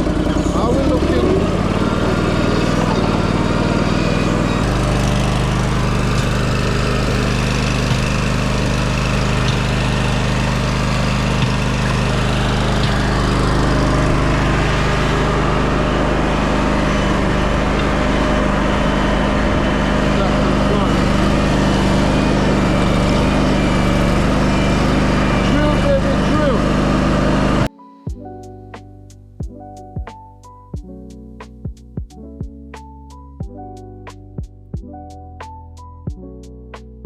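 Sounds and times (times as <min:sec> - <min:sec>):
engine running: 0:00.0 - 0:27.7.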